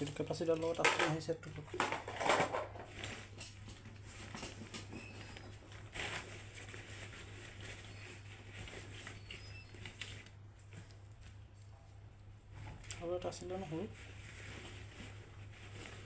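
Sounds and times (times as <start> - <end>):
rustling: 0.0 - 11.8, 12.4 - 16.0.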